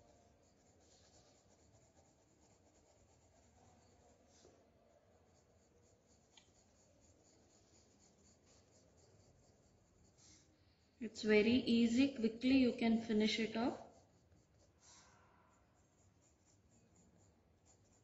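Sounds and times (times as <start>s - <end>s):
pencil scratching on paper: 0.0s - 18.0s
sharp pencil tick: 6.0s - 9.3s.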